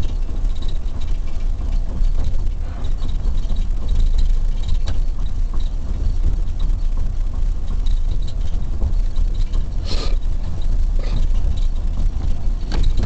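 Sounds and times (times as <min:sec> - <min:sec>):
car engine and road noise: 0:00.0 - 0:13.0.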